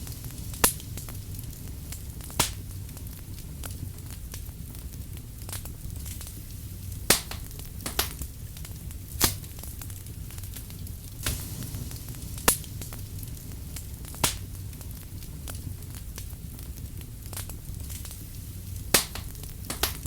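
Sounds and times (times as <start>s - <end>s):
low steady rumble: 0.0s - 19.9s
sharp pops from fire: 0.0s - 20.0s
wood fire crackling: 0.0s - 20.0s.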